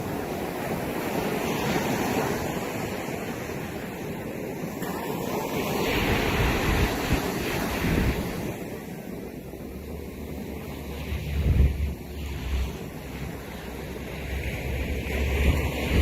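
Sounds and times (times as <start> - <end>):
ocean waves washing in: 0.0 - 16.0
wind on microphone: 0.0 - 16.0
deep rumble: 9.6 - 16.0.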